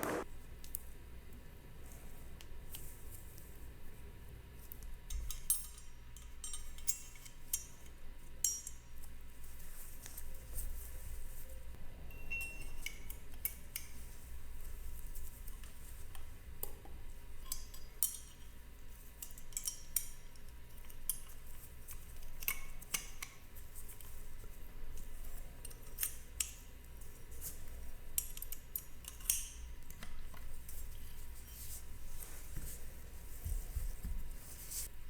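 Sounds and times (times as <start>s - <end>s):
faint low hum: 0.0s - 35.0s
small metal parts clicking: 28.2s - 30.0s.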